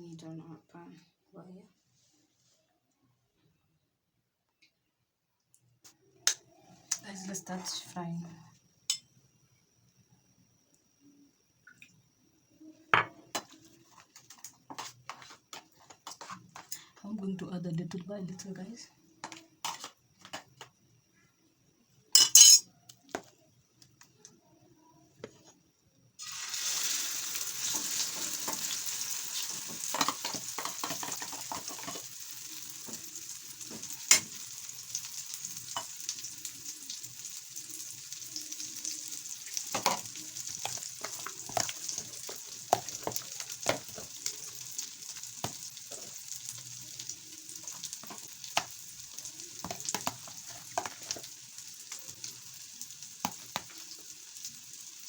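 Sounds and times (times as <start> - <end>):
food sizzling in oil: 26.2 - 55.0.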